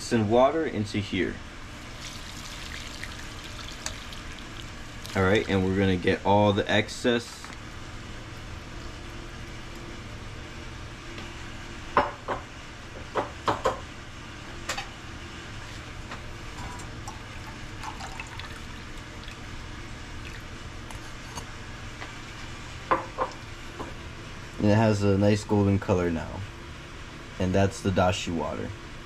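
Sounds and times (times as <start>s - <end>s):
liquid dripping through strainer: 2.0s - 5.6s
knocks against cookware: 12.0s - 13.8s.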